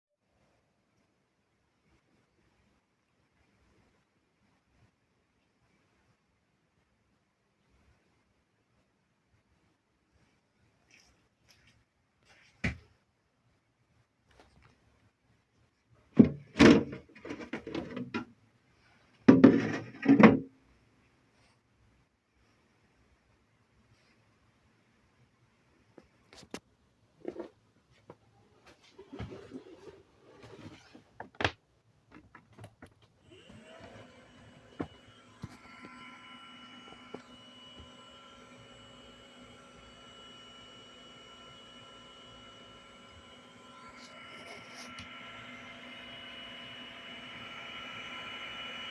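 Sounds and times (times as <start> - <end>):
pump motor humming and whining: 33.2 - 48.9.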